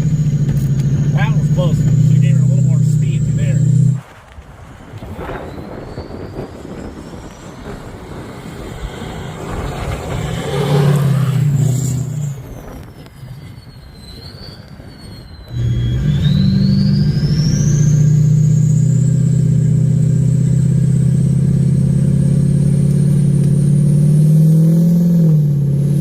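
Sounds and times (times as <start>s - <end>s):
diesel truck engine under throttle: 0.0s - 4.0s, 5.1s - 26.0s
turbo whistle: 5.2s - 7.9s, 10.9s - 19.6s.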